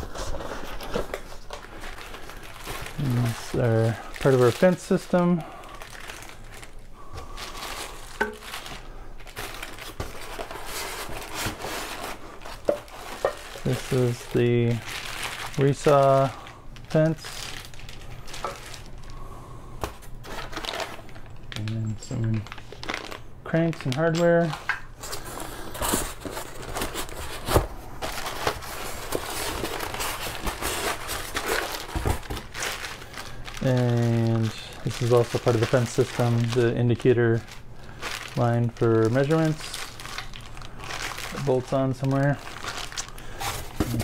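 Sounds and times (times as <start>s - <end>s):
packing material crinkling: 0.0s - 44.0s.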